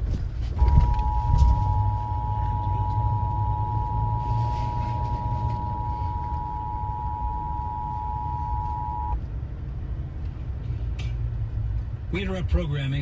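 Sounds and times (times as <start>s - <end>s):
low rumble: 0.0s - 9.2s
two-tone alert beep: 0.6s - 9.2s.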